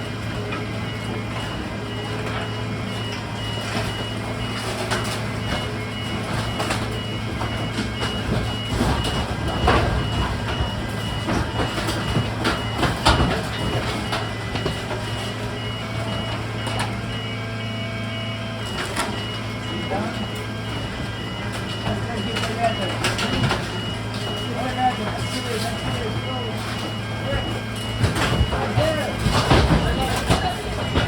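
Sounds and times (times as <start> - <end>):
diesel engine running: 0.0 - 31.0
reversing alarm beeping: 0.0 - 31.0
loud clattering knocks: 3.5 - 15.2, 20.7 - 31.0.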